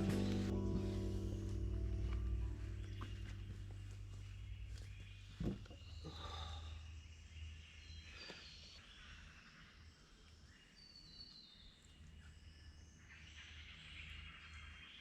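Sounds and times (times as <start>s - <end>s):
steady low rumble: 0.0s - 5.7s
distant bird calls: 0.0s - 10.6s.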